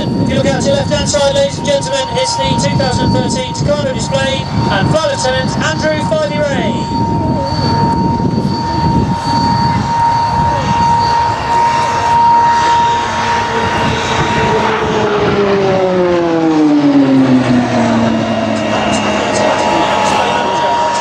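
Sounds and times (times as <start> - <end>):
aircraft engine whine: 0.0 - 21.0.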